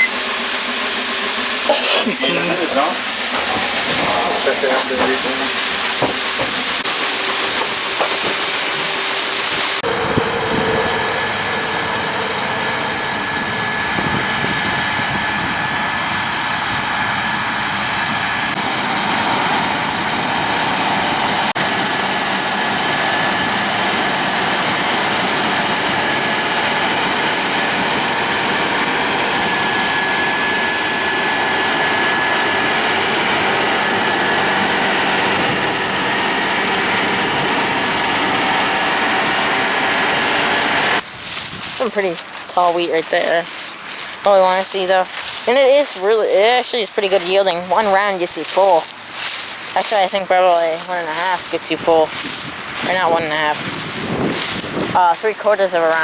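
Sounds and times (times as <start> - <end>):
loud steady hiss: 0.0 - 9.8
combine harvester drone: 0.0 - 56.0.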